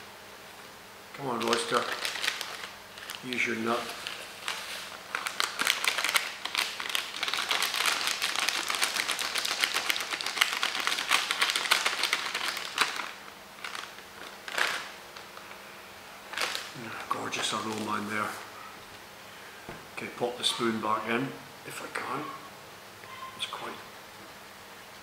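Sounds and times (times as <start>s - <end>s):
hand grinder crunching coffee beans: 1.4s - 14.9s.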